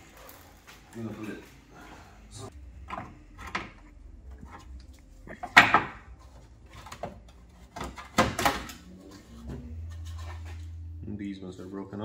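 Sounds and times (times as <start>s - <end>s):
car body part knocking and clattering: 5.3s - 8.7s.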